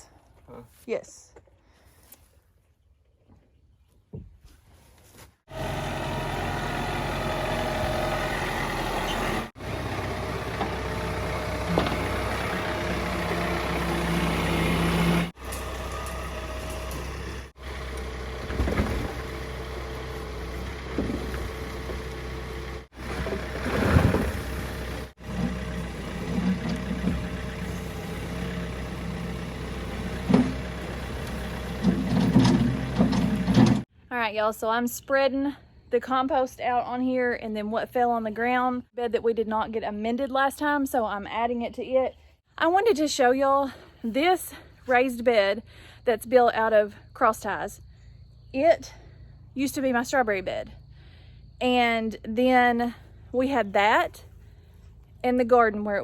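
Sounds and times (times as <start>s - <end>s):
engine running steadily: 5.5s - 33.9s.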